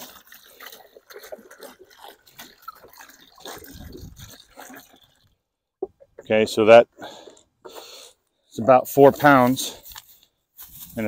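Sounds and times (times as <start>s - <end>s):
water pouring into a bucket: 0.0s - 5.4s.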